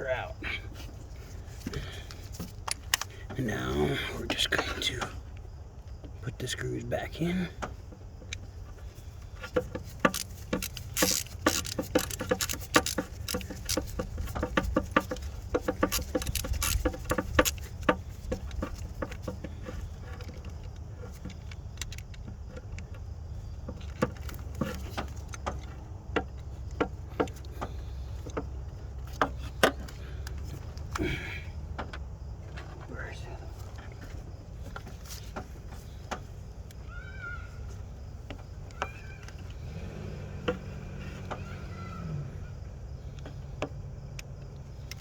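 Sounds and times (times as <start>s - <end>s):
screwdriver clicking on screws: 9.6s - 18.9s.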